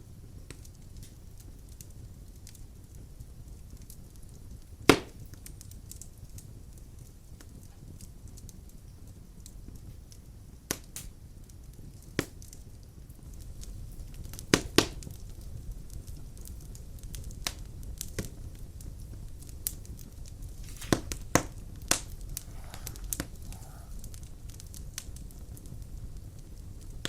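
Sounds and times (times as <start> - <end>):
wood fire crackling: 0.0 - 27.0
sharp fire pops: 4.5 - 8.6, 10.7 - 27.0.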